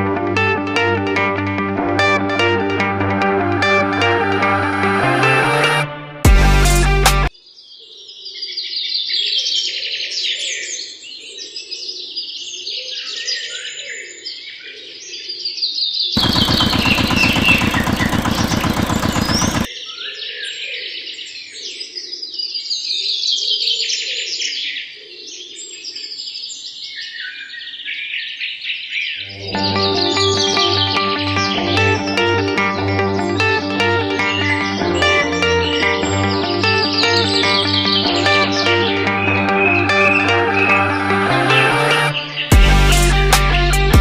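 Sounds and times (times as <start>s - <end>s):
loud pulsing rasp: 16.2s - 19.7s.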